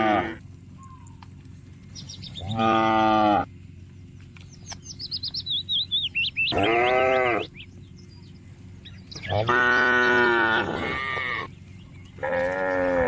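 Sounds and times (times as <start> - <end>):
cattle mooing: 0.0 - 0.4, 2.3 - 3.5, 6.5 - 7.6, 9.1 - 11.5, 12.2 - 13.0
small bird chirping rapidly: 0.8 - 2.6, 3.6 - 10.2.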